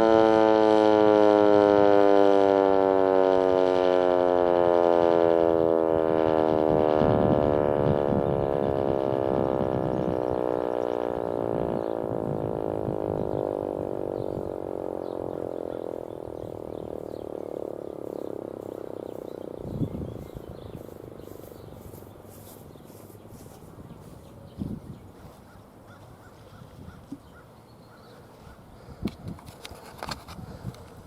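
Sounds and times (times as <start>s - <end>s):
warning siren winding down: 0.0s - 25.4s.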